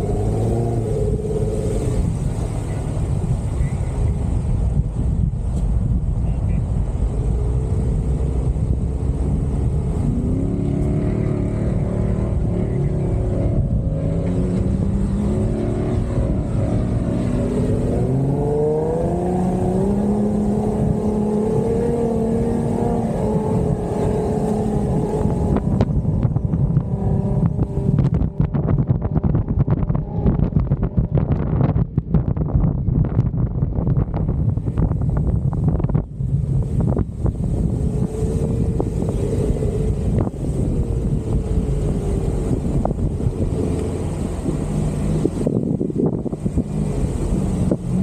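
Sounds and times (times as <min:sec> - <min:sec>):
engine revving under load: 0:00.0 - 0:02.8, 0:07.2 - 0:31.0
wind buffeting microphone: 0:00.0 - 0:48.0.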